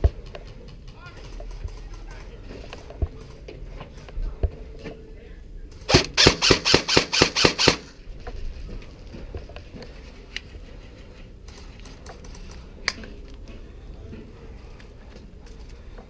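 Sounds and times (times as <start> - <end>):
faint clicks and rustling: 0.0 - 4.9, 8.2 - 16.0
airsoft gun firing sharp shots: 5.9 - 7.9.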